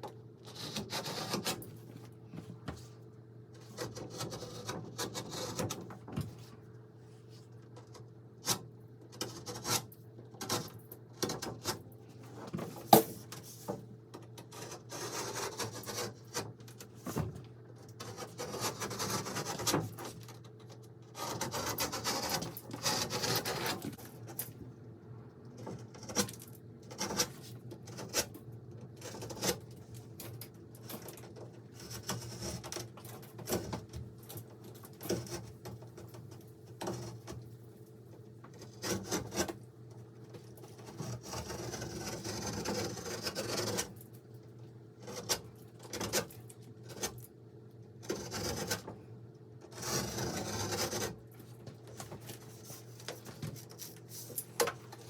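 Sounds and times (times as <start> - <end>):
rubbing and scraping: 17.9 - 20.4, 21.1 - 24.4, 30.8 - 37.6, 38.5 - 39.6, 40.2 - 44.1, 49.7 - 55.0.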